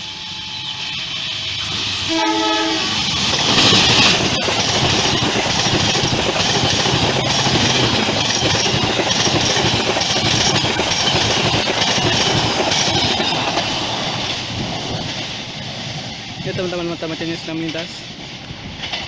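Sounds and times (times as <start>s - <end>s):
diesel locomotive passing: 0.0s - 19.0s
train horn blast: 1.6s - 3.1s
wheels clattering over rail joints: 1.6s - 16.0s.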